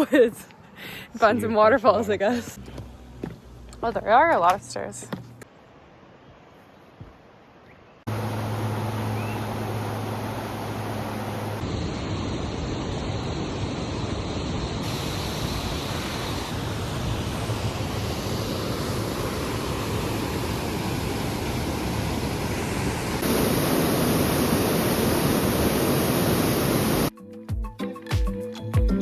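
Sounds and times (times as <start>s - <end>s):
waterfall rushing: 8.1s - 13.8s, 14.8s - 27.1s.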